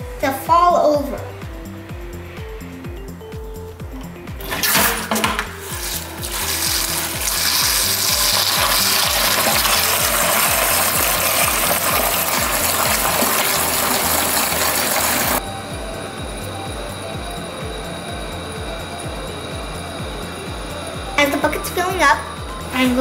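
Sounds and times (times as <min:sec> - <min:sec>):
background music with steady beat: 0:00.0 - 0:23.0
water rushing into a bucket: 0:04.4 - 0:15.4.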